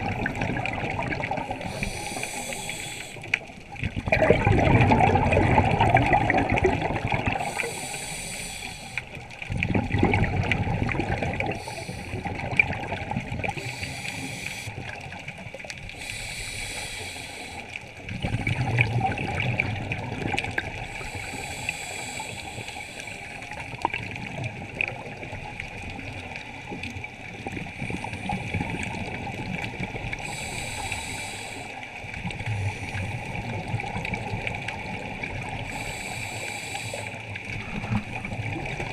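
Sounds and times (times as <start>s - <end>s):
bubbling exhaled air: 0.0s - 25.4s, 27.4s - 38.9s
diver breathing through regulator: 1.4s - 3.4s, 7.3s - 9.2s, 11.4s - 12.6s, 13.5s - 14.9s, 15.9s - 17.8s, 20.8s - 23.5s, 30.2s - 31.8s, 35.6s - 38.2s.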